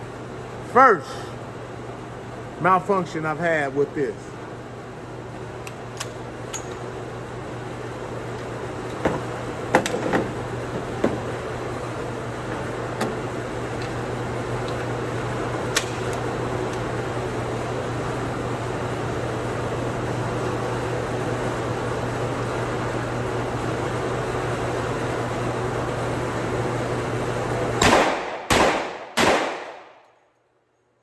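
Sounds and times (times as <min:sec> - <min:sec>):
fan-like hum: 0:00.0 - 0:31.0
loud gunshots: 0:27.8 - 0:30.0.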